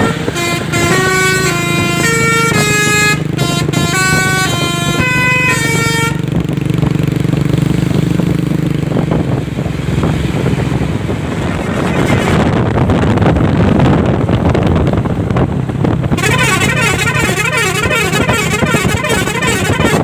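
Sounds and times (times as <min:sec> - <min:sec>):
truck multi-tone horn tune: 0:00.0 - 0:06.5, 0:11.9 - 0:12.6, 0:16.0 - 0:20.0
traffic noise: 0:00.0 - 0:20.0
truck engine humming: 0:00.0 - 0:20.0
wind: 0:00.0 - 0:20.0.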